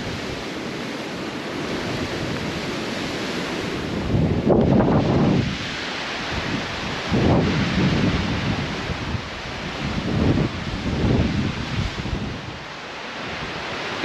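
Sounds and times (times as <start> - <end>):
strong wind buffeting microphone: 0.0 - 14.0.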